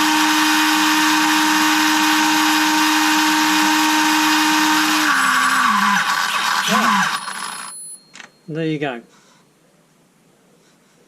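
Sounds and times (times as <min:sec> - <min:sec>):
electric chainsaw motor whining: 0:00.0 - 0:07.7.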